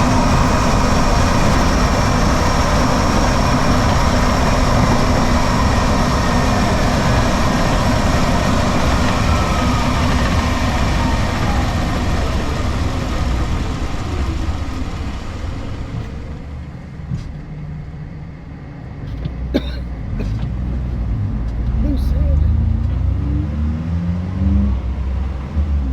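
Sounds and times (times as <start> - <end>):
electric motor whine: 0.0 - 16.3
road and wind noise: 0.0 - 25.9.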